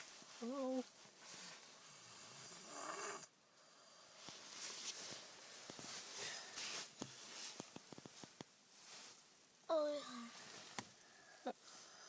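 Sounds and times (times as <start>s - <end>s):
slow breathy breaths: 1.2s - 7.6s, 10.0s - 12.0s
child snoring: 1.8s - 4.2s.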